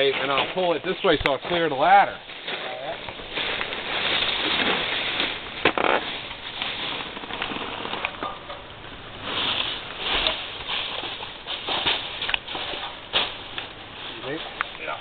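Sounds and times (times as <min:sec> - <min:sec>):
crackles: 0:00.0 - 0:15.0
leafy branch dragged across roof: 0:02.4 - 0:08.1, 0:09.1 - 0:13.4.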